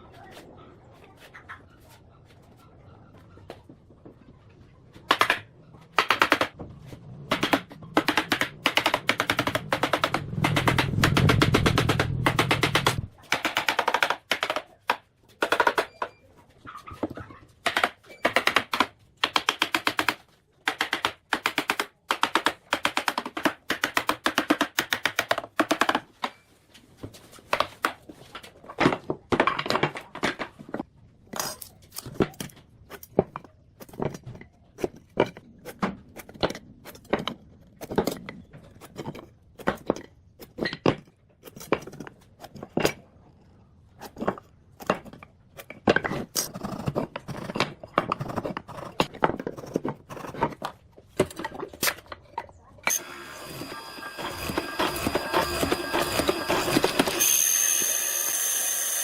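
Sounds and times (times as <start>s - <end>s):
hand tools working wood: 52.9s - 59.0s.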